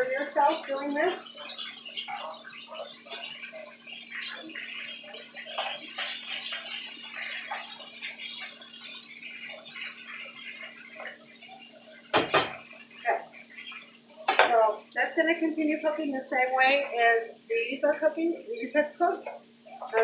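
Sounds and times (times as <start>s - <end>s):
chicken sizzling in a frying pan: 0.0s - 20.0s
sharp knocks: 12.1s - 12.6s.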